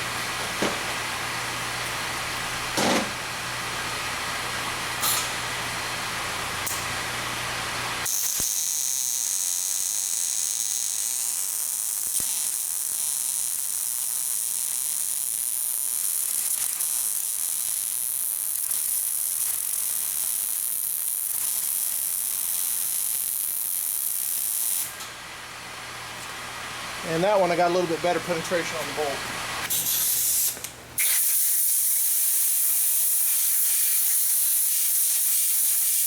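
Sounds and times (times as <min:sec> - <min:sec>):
gas torch hissing: 0:29.6 - 0:36.0.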